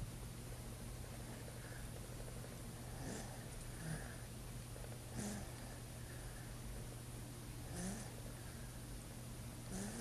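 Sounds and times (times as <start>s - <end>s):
steady low hum: 0.0s - 10.0s
snorting snore: 2.8s - 4.2s, 5.1s - 5.8s, 7.6s - 8.2s, 9.7s - 10.0s.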